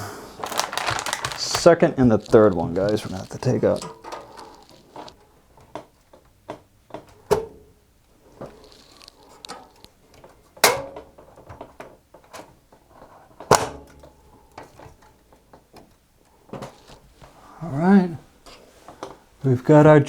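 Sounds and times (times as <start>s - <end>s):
metal computer case clicks and knocks: 5.7s - 7.8s, 9.5s - 12.6s, 13.4s - 15.9s.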